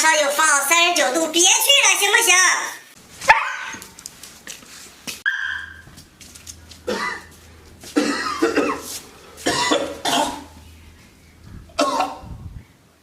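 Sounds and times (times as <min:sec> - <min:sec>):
man coughing hard: 0:06.8 - 0:10.6, 0:11.7 - 0:12.3.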